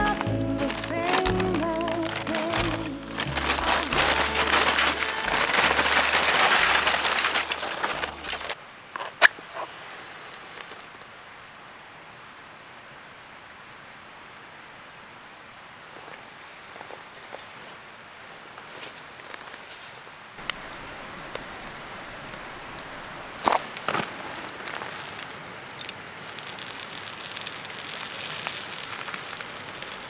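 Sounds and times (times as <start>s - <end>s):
background music with low bass: 0.0s - 5.6s
faint outdoor ambience: 0.0s - 30.0s.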